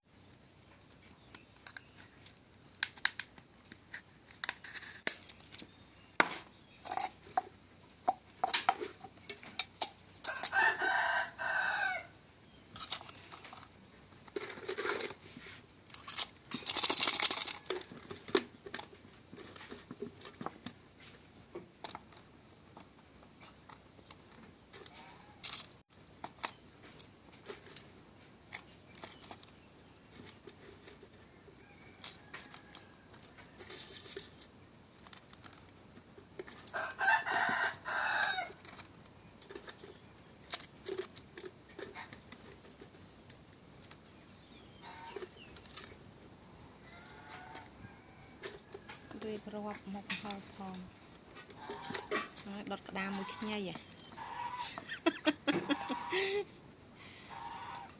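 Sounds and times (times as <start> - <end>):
rooster crowing: 10.2 - 12.2, 36.7 - 38.6, 46.8 - 49.1.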